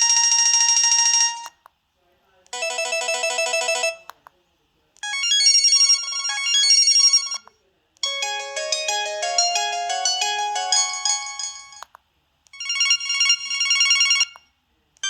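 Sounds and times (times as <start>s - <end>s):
phone ringing trill: 8.0s - 11.8s, 12.6s - 14.4s.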